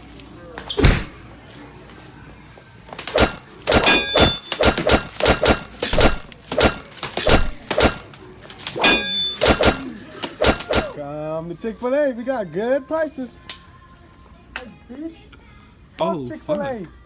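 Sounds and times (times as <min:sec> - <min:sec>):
loud thuds and crashing impacts: 0:00.8 - 0:01.2, 0:03.0 - 0:08.1
short ringing clink: 0:08.8 - 0:09.6.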